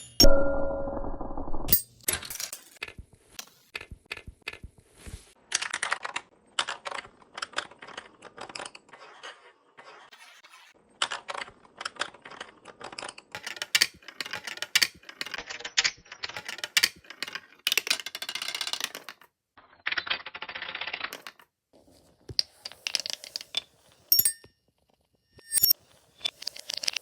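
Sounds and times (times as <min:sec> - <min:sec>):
marbles clicking and clacking: 0:25.4 - 0:25.8.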